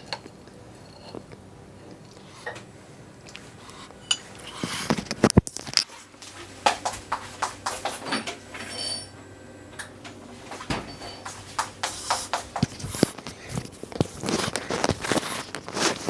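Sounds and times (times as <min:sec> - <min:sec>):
chewing with wet mouth clicks: 0:00.2 - 0:02.3.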